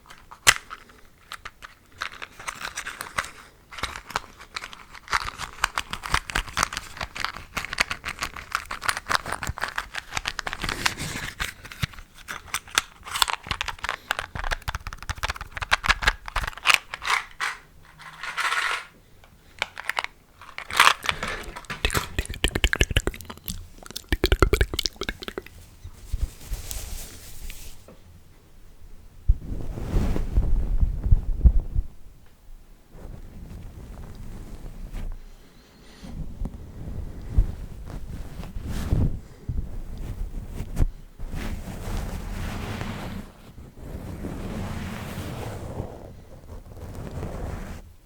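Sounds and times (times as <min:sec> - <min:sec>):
rustles: 0:25.4 - 0:28.0.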